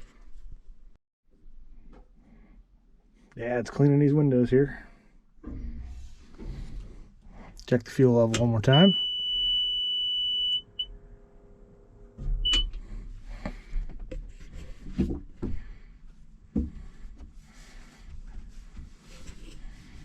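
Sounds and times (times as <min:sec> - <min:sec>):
electronic warning beeps: 0:08.7 - 0:10.9, 0:12.4 - 0:12.7.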